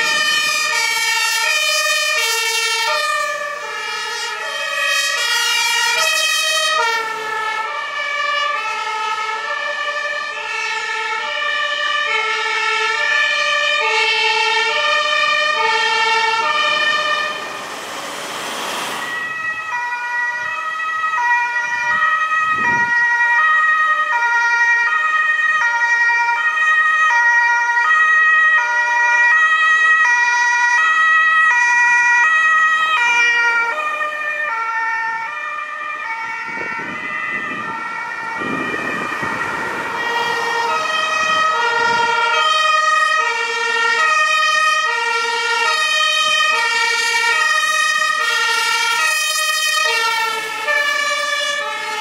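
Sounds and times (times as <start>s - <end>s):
passing vehicle noise: 0.0s - 21.2s, 36.1s - 52.0s
two-tone emergency sirens: 0.0s - 52.0s
steady high tone: 16.4s - 19.9s.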